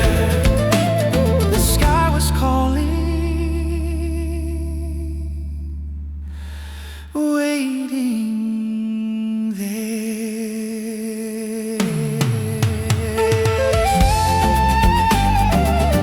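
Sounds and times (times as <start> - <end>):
percussive hits: 0.0 - 2.0, 11.8 - 16.0
wordless hummed vocal: 0.0 - 3.4
low bass: 0.0 - 7.2, 14.0 - 16.0
plucked notes: 14.0 - 16.0.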